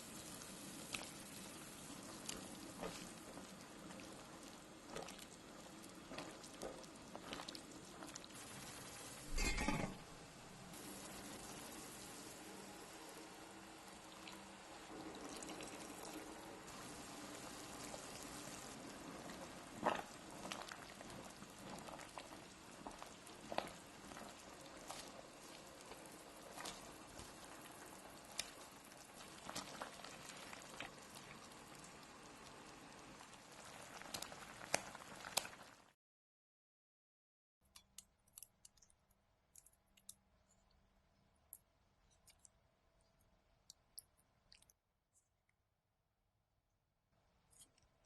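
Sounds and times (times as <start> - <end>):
sauce bubbling in a pan: 0.0 - 36.0.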